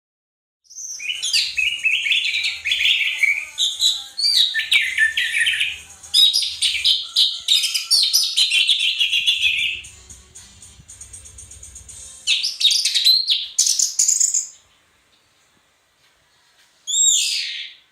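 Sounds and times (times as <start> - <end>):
thrush singing: 1.0 - 14.4.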